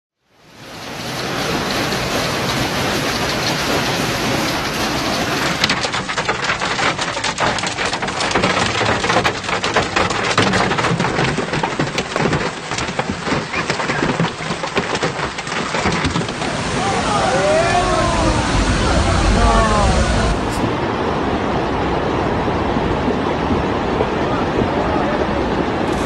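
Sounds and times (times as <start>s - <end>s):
hard raindrops pattering: 0.3s - 20.9s
heavy rain downpour: 0.3s - 26.0s.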